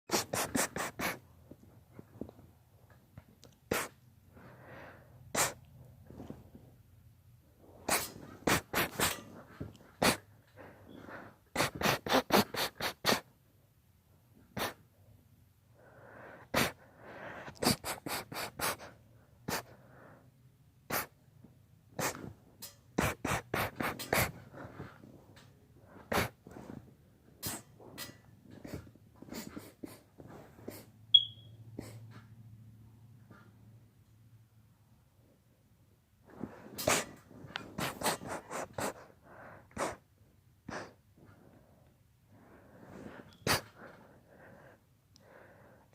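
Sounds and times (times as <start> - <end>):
person sneezing and snorting: 0.1 - 1.3, 3.6 - 4.0, 5.4 - 5.6, 7.8 - 10.3, 11.5 - 13.3, 14.5 - 14.8, 16.5 - 16.8, 17.4 - 19.7, 20.9 - 21.2, 22.0 - 22.4, 23.0 - 25.0, 26.0 - 26.8, 27.4 - 27.7, 28.5 - 30.9, 36.5 - 39.1, 39.7 - 40.0, 40.7 - 41.0, 43.4 - 43.9
breathing and sniffing: 0.1 - 1.4, 3.6 - 6.6, 7.6 - 13.3, 14.5 - 14.9, 15.7 - 21.3, 21.9 - 22.4, 23.0 - 31.0, 31.7 - 32.3, 36.2 - 45.9
high-pitched squeak: 31.1 - 31.6.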